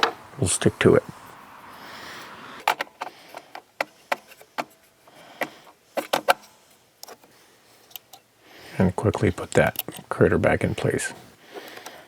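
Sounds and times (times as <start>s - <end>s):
sharp clicks of parts handled: 5.4s - 8.3s, 9.5s - 10.1s, 11.6s - 12.0s.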